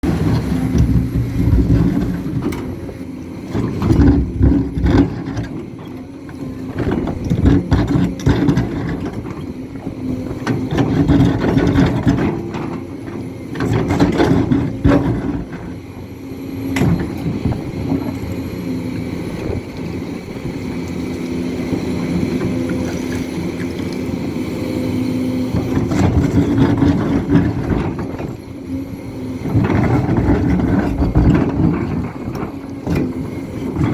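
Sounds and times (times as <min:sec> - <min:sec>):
excavator diesel engine working: 0:00.0 - 0:33.9
knocks and clatter: 0:29.4 - 0:33.9.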